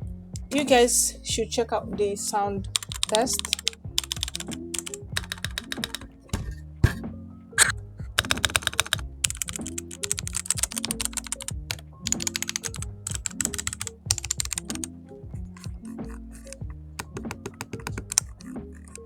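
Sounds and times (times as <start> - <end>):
background music: 0.0 - 19.0
keyboard key clicks: 2.7 - 7.0, 7.6 - 14.9, 15.6 - 19.0.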